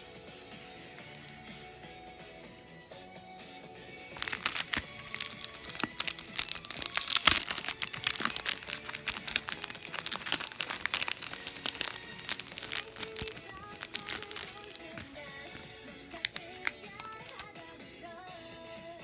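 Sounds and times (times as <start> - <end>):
soft background music: 0.0 - 19.0
packaging crinkling: 3.7 - 18.2.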